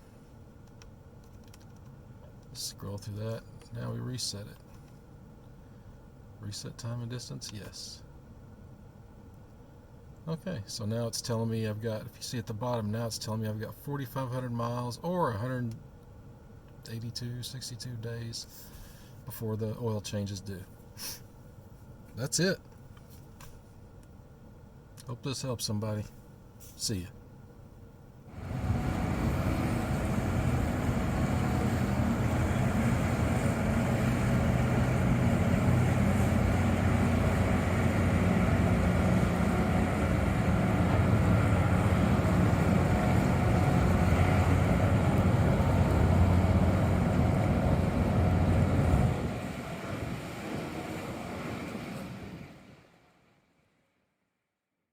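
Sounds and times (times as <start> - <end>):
engine running with low hum: 28.2 - 53.0.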